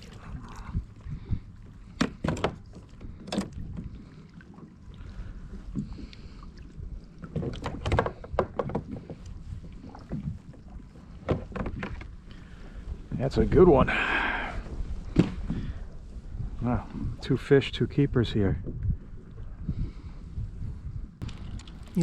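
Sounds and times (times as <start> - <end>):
low wind rumble: 0.0 - 22.0
knocks against kayak hull: 15.1 - 15.6.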